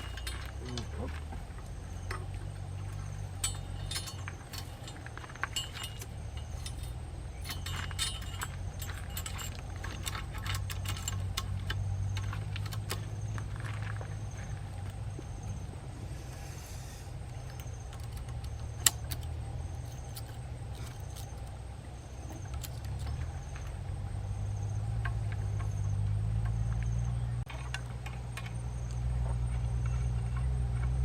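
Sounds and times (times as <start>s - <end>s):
sharp clicks and knocks: 17.5s - 21.5s.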